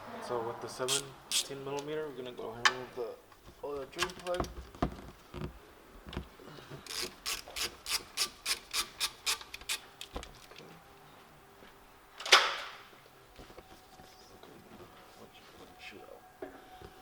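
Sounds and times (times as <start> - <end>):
socket ratchet rasping: 0.9 - 1.5, 6.8 - 9.8.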